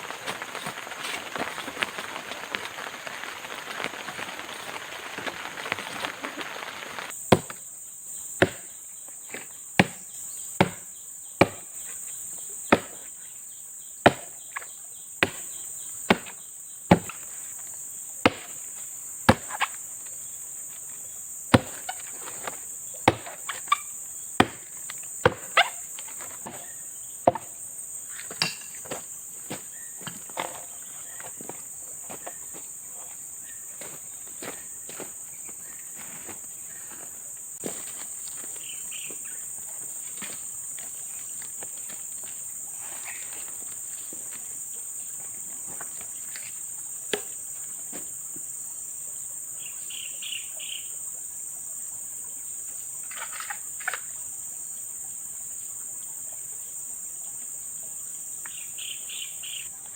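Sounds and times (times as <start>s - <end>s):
steady rain: 0.0s - 7.1s
forest insects chorus: 0.0s - 59.9s
blade chopping wood: 7.0s - 7.6s, 8.4s - 11.8s, 12.7s - 13.1s, 14.0s - 17.3s, 18.2s - 20.0s, 21.5s - 32.6s, 47.1s - 47.4s.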